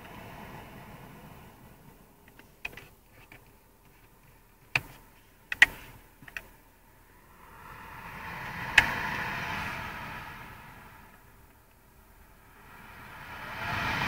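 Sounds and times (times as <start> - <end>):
rush of air from vents: 0.0 - 2.2, 6.8 - 14.0
air vent clicks and ticks: 1.6 - 6.9, 8.4 - 9.6.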